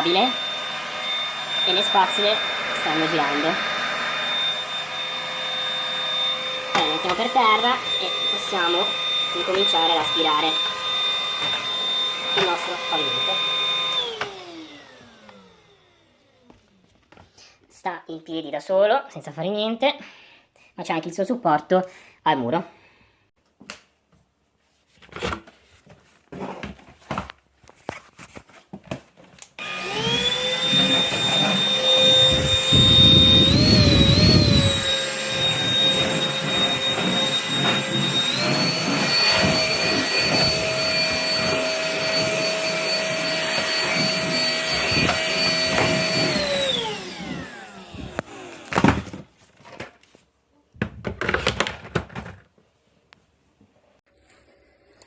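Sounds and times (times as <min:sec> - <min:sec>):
vacuum motor whine: 0:00.0 - 0:16.4, 0:29.6 - 0:49.1.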